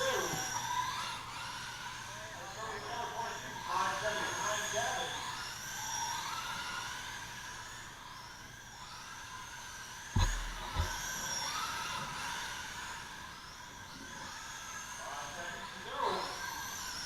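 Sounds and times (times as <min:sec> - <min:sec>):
rc car motors whining: 0:00.0 - 0:17.0
short thumps: 0:10.2 - 0:11.2.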